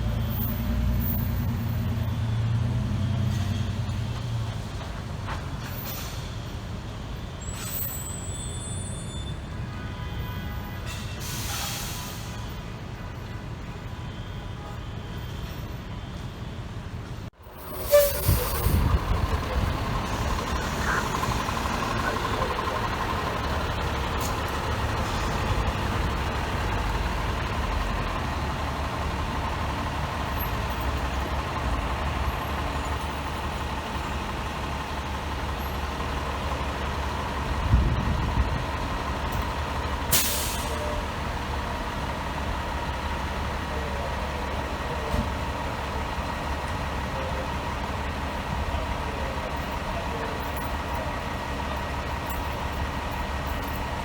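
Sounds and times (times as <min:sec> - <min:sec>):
air brakes hissing: 0:05.6 - 0:06.6, 0:07.4 - 0:09.4, 0:10.8 - 0:12.6, 0:17.5 - 0:23.4, 0:40.1 - 0:41.0
diesel engine idling: 0:17.4 - 0:54.0.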